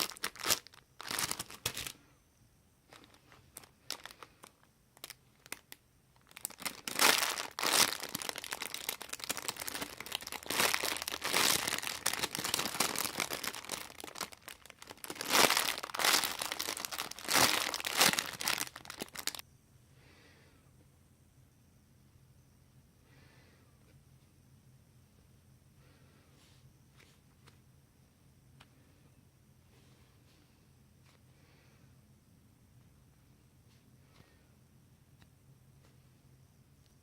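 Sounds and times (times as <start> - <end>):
plastic bags crinkling: 0.0 - 2.0, 2.9 - 19.4.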